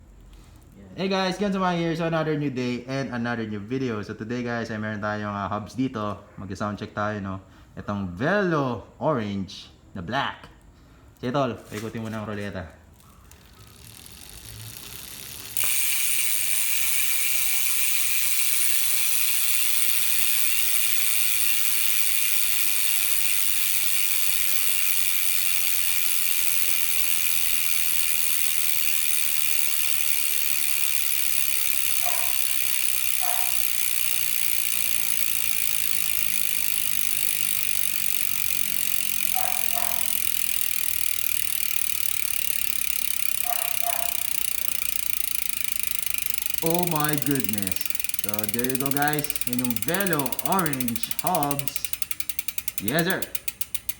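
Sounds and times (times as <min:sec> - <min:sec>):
bicycle hub freewheeling buzz: 0:12.2 - 0:53.9.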